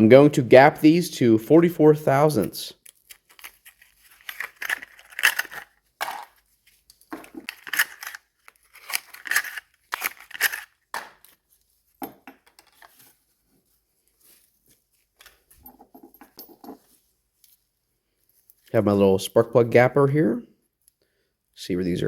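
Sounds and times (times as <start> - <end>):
packaging tearing and crinkling: 2.9 - 6.2, 7.4 - 11.2.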